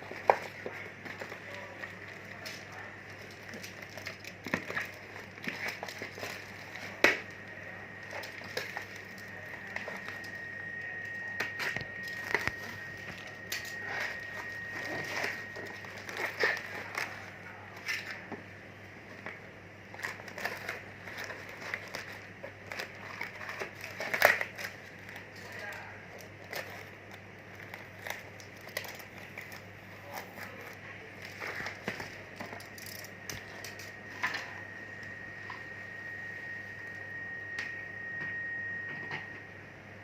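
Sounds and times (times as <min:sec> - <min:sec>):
crinkling: 0:00.0 - 0:35.2
faint high whistle: 0:34.1 - 0:39.8.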